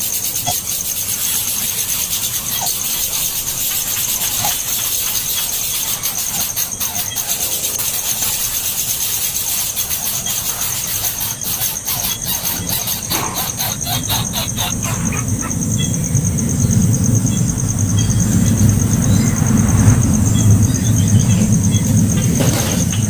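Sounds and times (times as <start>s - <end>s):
steady high hiss: 0.0s - 22.1s
nestling birds cheeping: 0.0s - 23.0s
low rumble: 14.7s - 23.0s.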